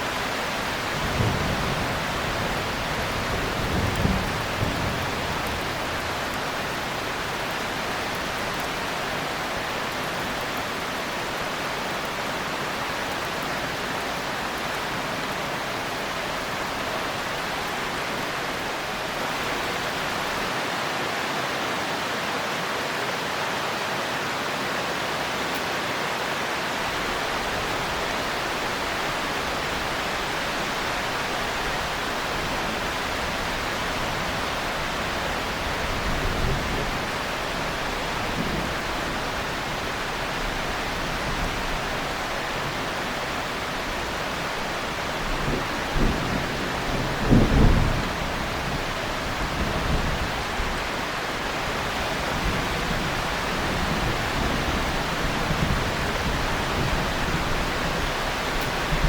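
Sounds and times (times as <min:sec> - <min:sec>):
heavy rain hissing: 0:00.0 - 0:59.0
distant thunder rumble: 0:00.3 - 0:11.4, 0:27.2 - 0:50.8, 0:51.4 - 0:59.0.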